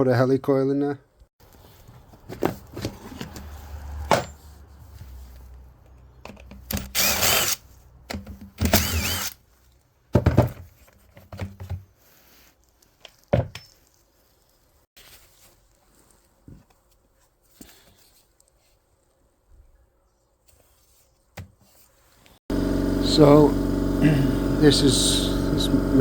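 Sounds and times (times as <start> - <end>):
power drill drilling: 6.7 - 7.6, 8.6 - 9.4, 22.5 - 26.0.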